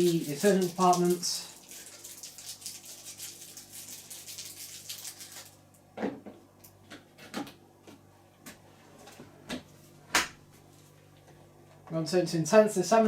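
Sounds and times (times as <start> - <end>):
crinkly rustling: 0.0 - 5.6.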